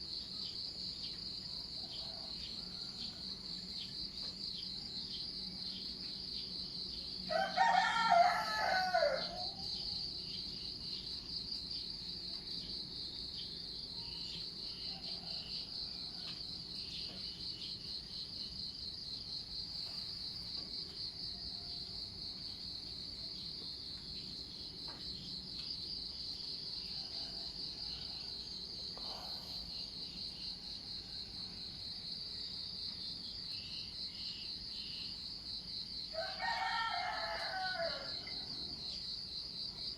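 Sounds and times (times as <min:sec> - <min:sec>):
insects chirring: 0:00.0 - 0:39.9
rooster crowing: 0:07.3 - 0:10.1, 0:26.7 - 0:29.1, 0:36.1 - 0:38.8.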